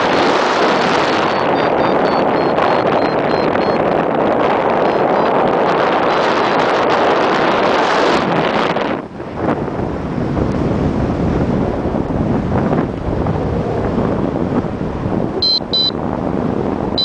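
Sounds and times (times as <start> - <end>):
wind buffeting microphone: 0.0 - 17.0
short high beeps: 1.1 - 3.8, 15.4 - 16.0.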